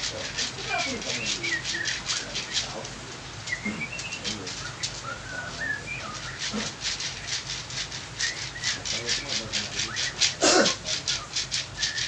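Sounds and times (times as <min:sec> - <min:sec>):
hands rubbing over skin: 0:00.0 - 0:03.6
faint bird chirps: 0:00.0 - 0:12.0.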